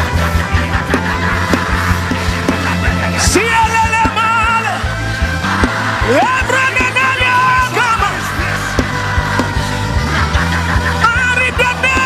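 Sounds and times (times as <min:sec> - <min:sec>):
band playing gospel music: 0:00.0 - 0:12.0
regular drum beat: 0:00.8 - 0:04.5, 0:08.8 - 0:09.8.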